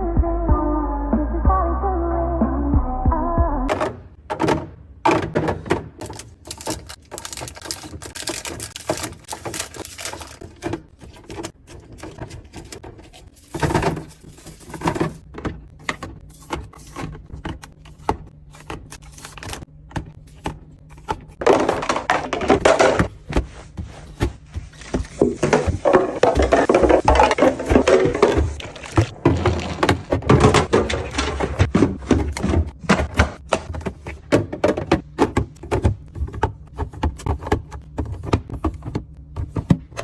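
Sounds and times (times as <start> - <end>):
containers knocking on shelves: 3.7 - 16.2, 19.9 - 23.5, 24.2 - 39.9.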